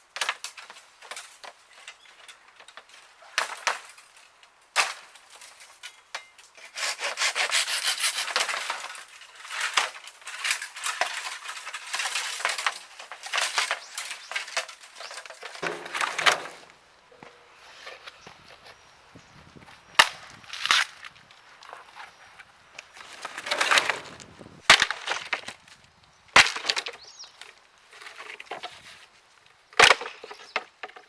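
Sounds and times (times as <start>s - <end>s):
hand saw cutting bamboo: 6.6s - 8.8s.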